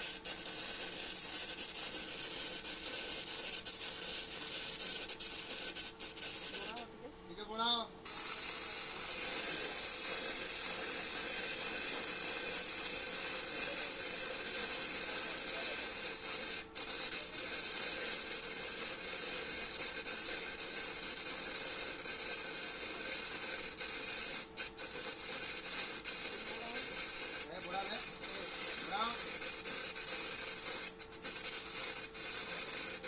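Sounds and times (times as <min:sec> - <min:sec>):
welding arc crackling hiss: 0:00.0 - 0:06.9, 0:08.0 - 0:33.0.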